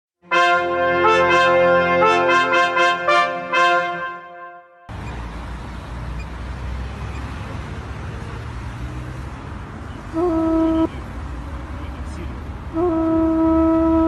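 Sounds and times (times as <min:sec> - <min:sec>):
vehicle horn: 0:00.2 - 0:04.9, 0:10.1 - 0:10.9, 0:12.7 - 0:14.0
vehicle engine rumble: 0:04.9 - 0:14.0.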